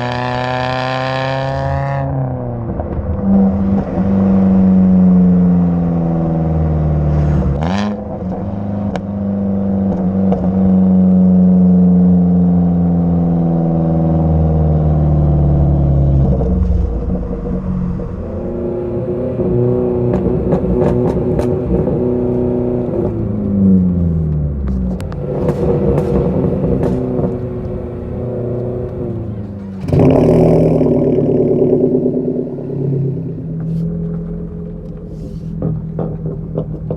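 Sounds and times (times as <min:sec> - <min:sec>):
car engine through loud exhaust: 0:00.0 - 0:36.9
sharp exhaust crackles: 0:15.0 - 0:36.9.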